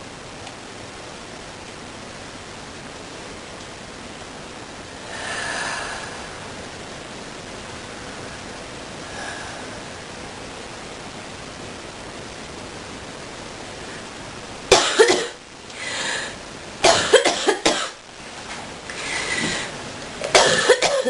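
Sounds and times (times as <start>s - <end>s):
steady hiss: 0.0s - 21.0s
drawn breaths: 5.0s - 6.6s, 18.9s - 19.8s
harsh coughing: 14.7s - 15.4s, 16.8s - 18.0s, 20.3s - 21.0s.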